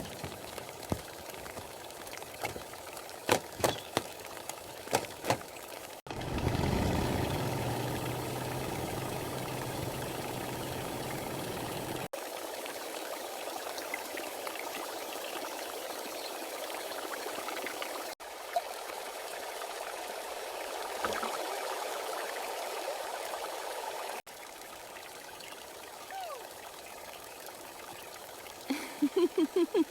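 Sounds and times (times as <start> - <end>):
rain: 0.0 - 29.9
running water: 0.0 - 29.9
sharp knocks: 3.3 - 4.2.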